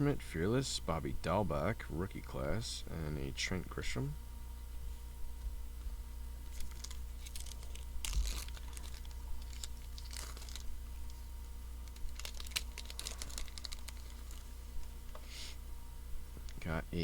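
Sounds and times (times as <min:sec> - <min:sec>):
steady low hum: 0:00.0 - 0:17.0
wrapper crinkling and tearing: 0:06.5 - 0:11.2, 0:11.8 - 0:14.5.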